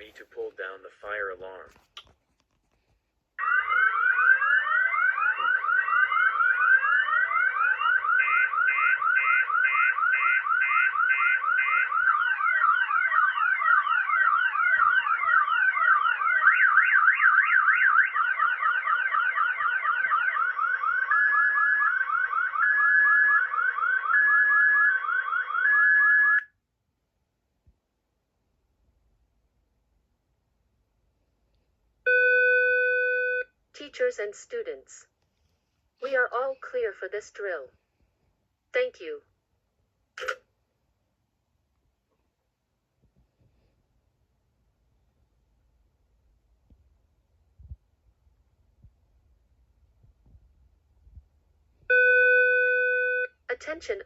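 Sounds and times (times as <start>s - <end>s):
fire alarm siren: 3.4s - 26.5s, 32.1s - 33.5s, 51.9s - 53.4s.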